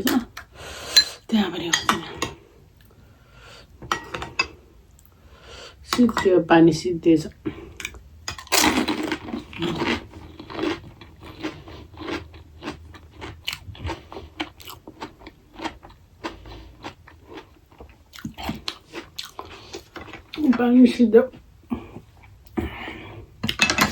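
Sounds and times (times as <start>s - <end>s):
crunching fried shells: 8.4s - 20.5s.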